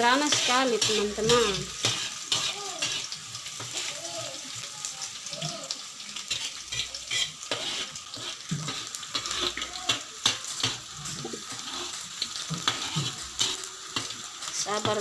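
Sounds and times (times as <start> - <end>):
shallots sizzling in hot oil: 0.0 - 15.0
spatula clicks stirring: 0.1 - 3.9.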